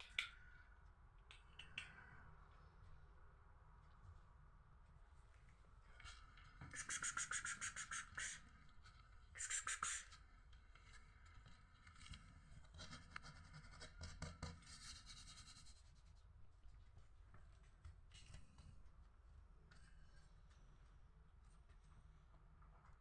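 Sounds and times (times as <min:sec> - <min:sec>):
rapid scratching on a surface: 0:06.1 - 0:10.2, 0:10.9 - 0:16.3.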